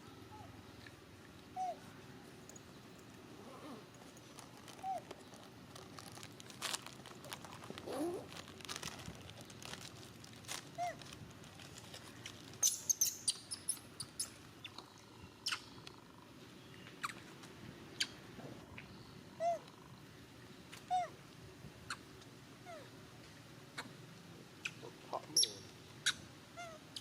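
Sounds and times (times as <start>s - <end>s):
baby monkey cooing: 1.6s - 1.8s, 10.8s - 11.0s, 20.9s - 21.1s.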